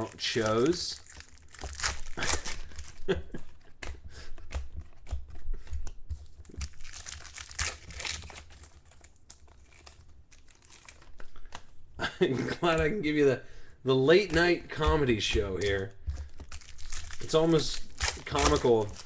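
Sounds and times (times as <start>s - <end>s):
card pack wrappers crinkling: 0.0s - 11.8s, 14.0s - 19.0s.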